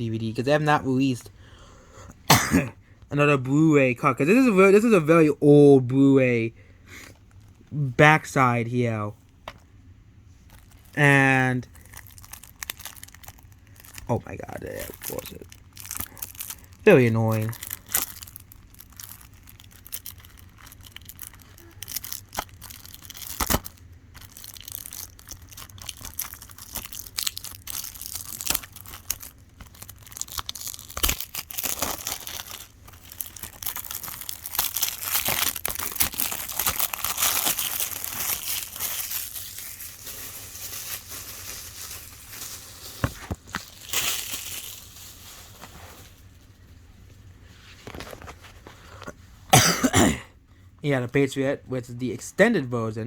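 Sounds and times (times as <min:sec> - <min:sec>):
plastic shrink wrap crinkling: 0:10.4 - 0:46.8.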